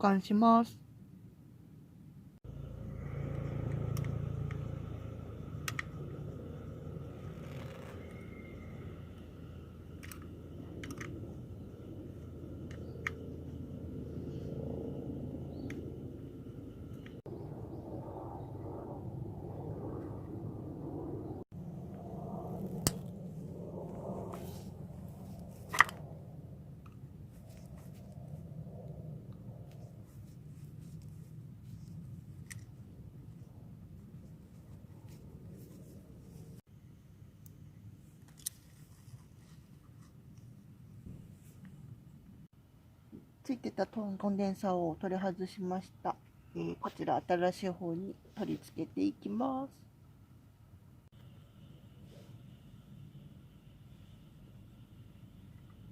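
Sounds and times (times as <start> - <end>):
low steady hum: 0.8 - 55.9
low background rumble: 1.1 - 38.2.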